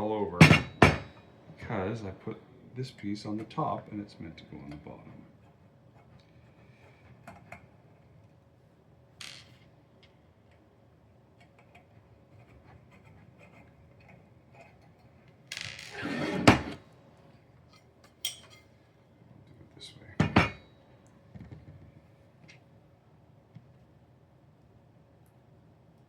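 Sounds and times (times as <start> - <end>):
short scrape: 15.9 - 16.8.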